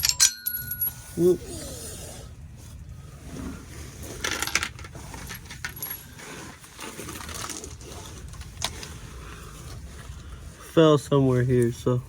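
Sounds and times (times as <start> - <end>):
metal bolt clattering among metal parts: 0.0 - 0.9
hand rummaging through metal parts: 0.0 - 1.4, 4.0 - 12.0.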